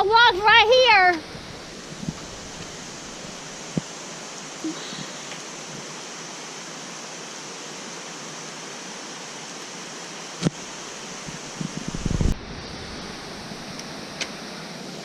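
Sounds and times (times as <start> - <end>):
mountain stream rushing: 0.0 - 15.0.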